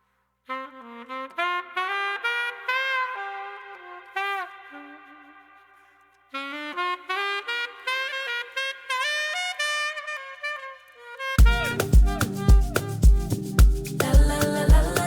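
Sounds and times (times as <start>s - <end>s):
solo melody music: 11.4s - 15.0s.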